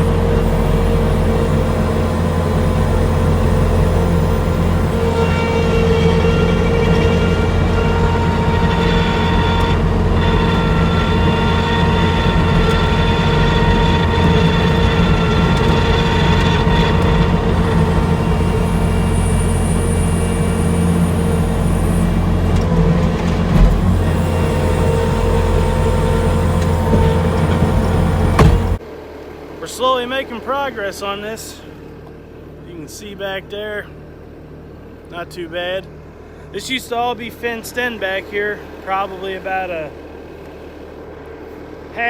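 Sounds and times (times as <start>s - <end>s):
skid loader engine running: 0.0s - 28.8s
steady whine: 0.0s - 28.8s
brief thump: 28.3s - 28.8s.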